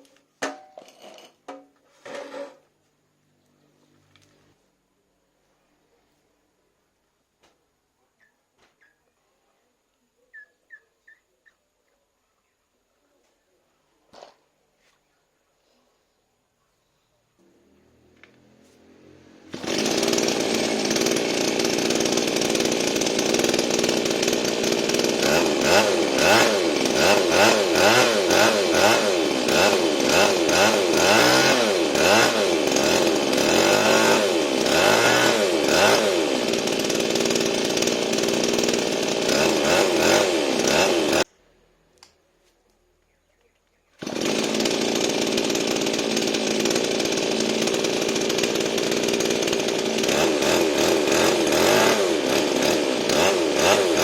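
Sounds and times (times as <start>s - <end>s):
lawn mower engine running: 17.7s - 41.3s, 44.0s - 54.0s.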